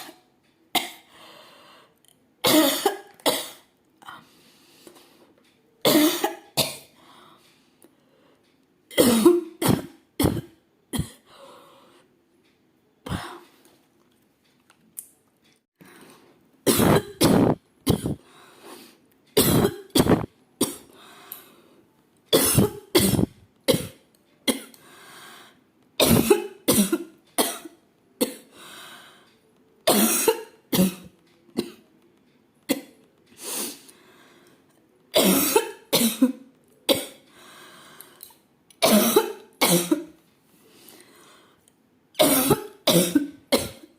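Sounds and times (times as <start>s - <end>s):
faint breaths: 1.1s - 2.0s, 4.0s - 5.6s, 6.9s - 8.6s, 11.2s - 12.2s, 18.2s - 19.1s, 20.9s - 22.0s, 24.8s - 25.8s, 28.5s - 29.5s, 33.3s - 34.8s, 37.2s - 38.3s, 40.4s - 41.7s
woman coughing: 2.4s - 3.6s, 8.9s - 11.2s, 16.7s - 18.2s, 19.4s - 20.9s, 22.4s - 24.7s, 26.0s - 28.5s, 29.9s - 31.8s, 35.2s - 37.2s, 38.8s - 40.1s, 42.2s - 43.9s
throat clearing: 16.8s - 18.2s.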